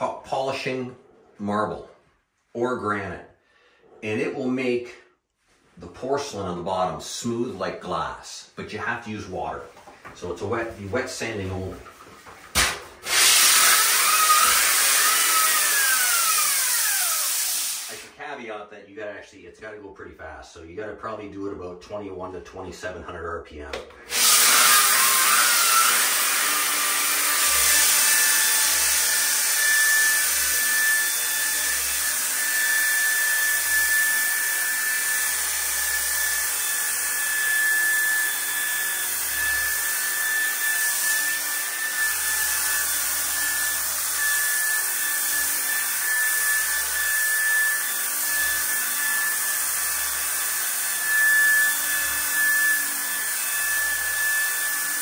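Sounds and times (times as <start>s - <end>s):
sander high-pitched whine: 24.1s - 55.0s.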